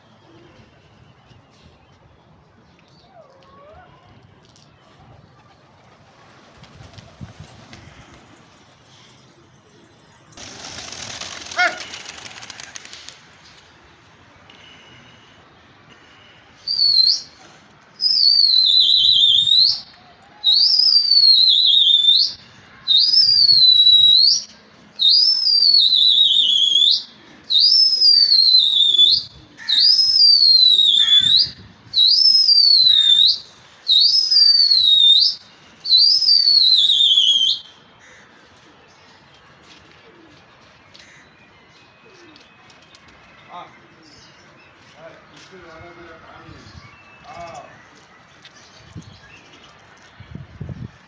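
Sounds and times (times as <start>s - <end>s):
person whistling loudly: 25.0s - 37.7s.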